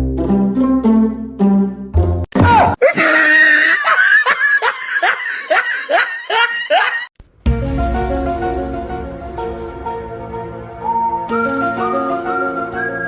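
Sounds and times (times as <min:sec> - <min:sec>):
background piano music: 0:00.0 - 0:02.3, 0:07.4 - 0:13.0
high-pitched laughter: 0:02.8 - 0:07.1.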